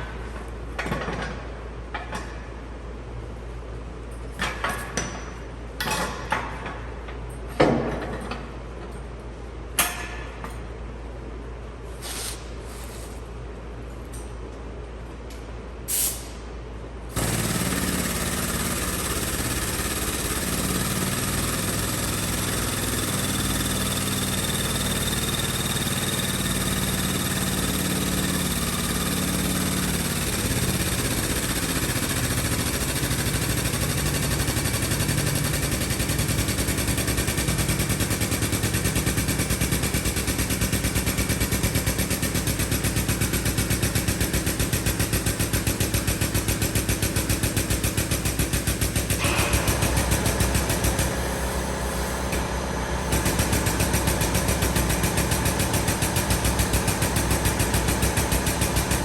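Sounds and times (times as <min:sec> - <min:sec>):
engine running: 0:17.1 - 0:59.0.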